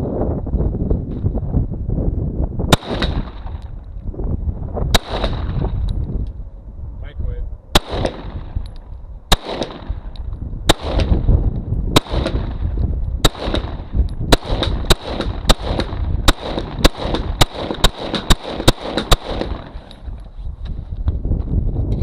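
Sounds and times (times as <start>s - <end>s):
pistol shots with echo: 2.7s - 3.6s, 4.9s - 5.7s, 7.7s - 8.7s, 9.3s - 11.3s, 11.9s - 19.9s.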